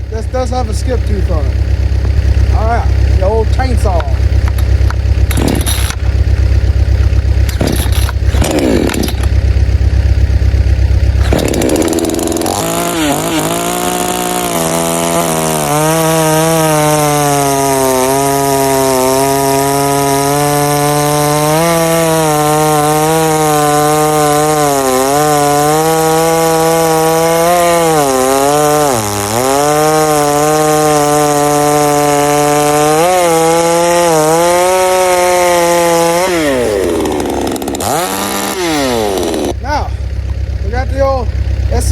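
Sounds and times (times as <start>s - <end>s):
chainsaw cutting wood: 0.0s - 9.8s, 11.0s - 40.5s
loud low rumbling: 0.0s - 15.0s.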